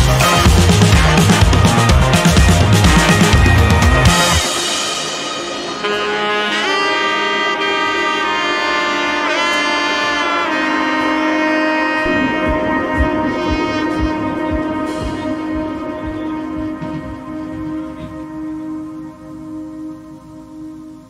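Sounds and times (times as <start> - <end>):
low beat: 0.0 - 6.4, 11.4 - 21.0
saxophone-like horn melody: 0.0 - 21.0.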